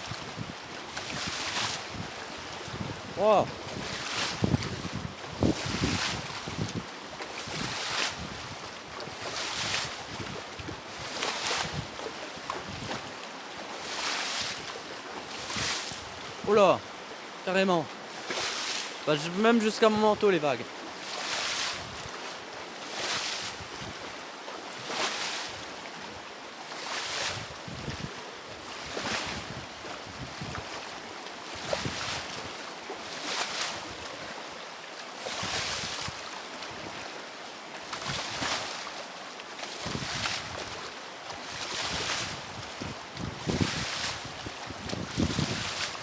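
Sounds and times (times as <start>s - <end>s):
wind rumbling on microphone: 0.0s - 8.7s, 9.6s - 12.0s, 27.3s - 28.2s, 28.8s - 30.8s, 39.8s - 40.8s, 41.8s - 46.0s
river waves splashing against bank: 0.0s - 46.0s.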